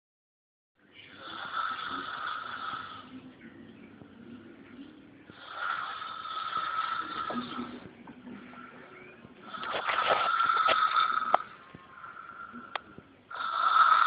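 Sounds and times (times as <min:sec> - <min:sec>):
boy snoring loudly: 0:01.2 - 0:03.1, 0:05.4 - 0:07.8, 0:09.4 - 0:11.4, 0:13.3 - 0:14.0.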